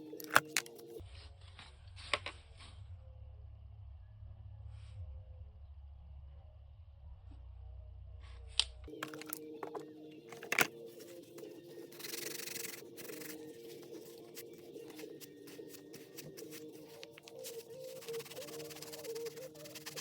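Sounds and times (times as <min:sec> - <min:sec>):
quiet background music: 0:00.0 - 0:20.0
rubbing scrape: 0:17.4 - 0:20.0.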